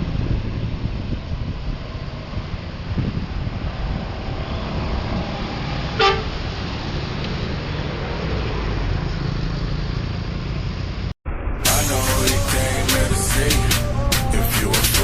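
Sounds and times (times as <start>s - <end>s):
passing traffic rumble: 0.0s - 15.0s
bus horn toot: 6.0s - 6.4s.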